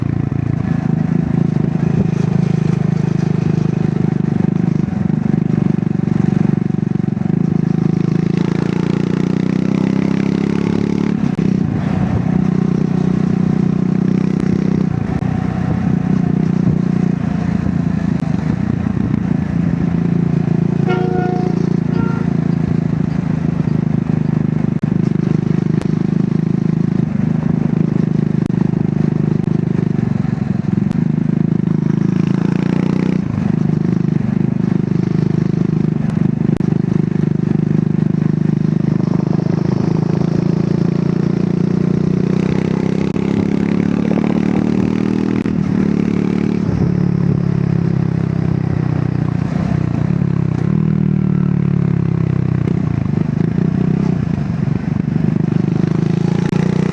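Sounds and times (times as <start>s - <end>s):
motorcycle engine revving: 0.0s - 56.9s.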